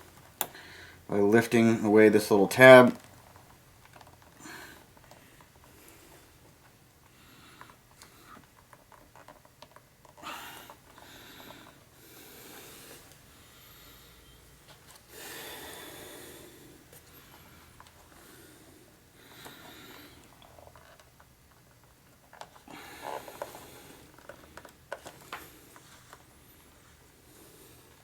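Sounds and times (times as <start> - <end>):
person breathing heavily: 10.2 - 14.3, 15.1 - 17.6.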